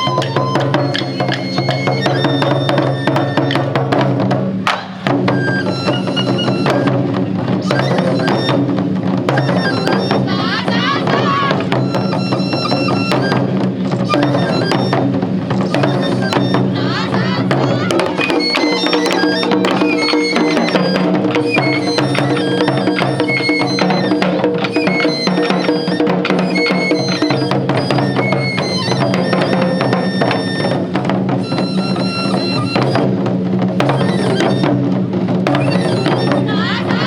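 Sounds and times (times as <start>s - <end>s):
high wind instrument melody: 0.0s - 4.4s, 5.1s - 37.0s
rapid drum strikes: 0.0s - 28.3s.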